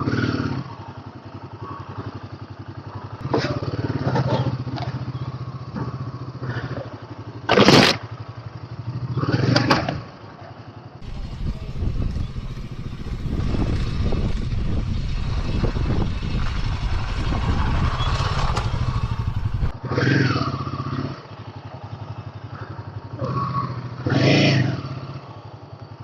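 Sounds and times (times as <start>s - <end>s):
engine revs: 0.0s - 10.2s, 11.0s - 25.7s
motorcycle engine climbing: 0.0s - 26.0s.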